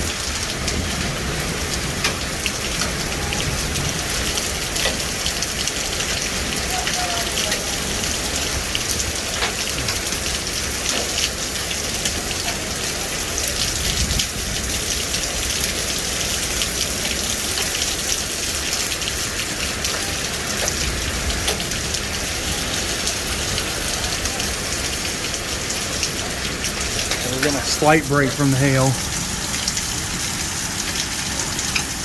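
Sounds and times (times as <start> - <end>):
heavy rain hissing: 19.2 - 32.0.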